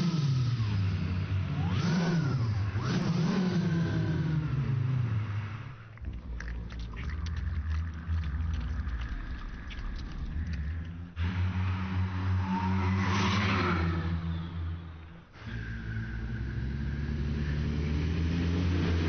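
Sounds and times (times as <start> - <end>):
car engine revving: 0.0 - 19.0
exhaust crackling: 0.0 - 19.0.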